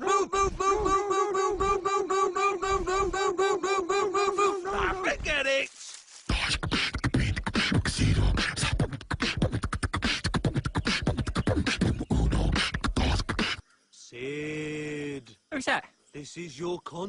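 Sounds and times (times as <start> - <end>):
person beatboxing: 6.3 - 13.6.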